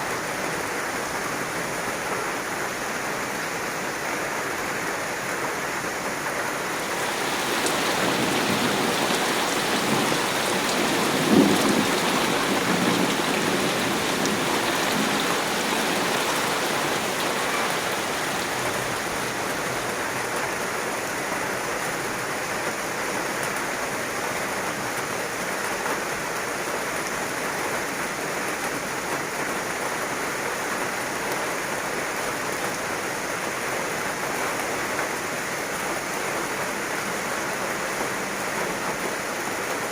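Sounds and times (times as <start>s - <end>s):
heavy rain falling: 5.9s - 30.1s
low rumble of thunder: 6.8s - 19.9s.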